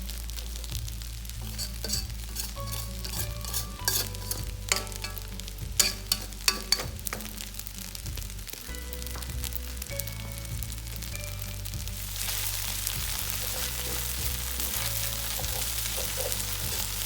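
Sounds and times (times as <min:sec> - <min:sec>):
food sizzling in a pan: 0:00.0 - 0:17.0
utensil clinking against pan: 0:01.4 - 0:07.3.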